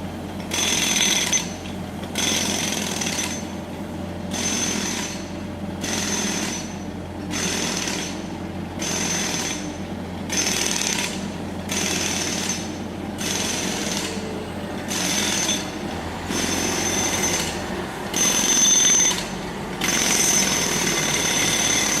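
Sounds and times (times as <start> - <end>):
jackhammer breaking pavement: 0.5 - 3.5, 4.3 - 22.0.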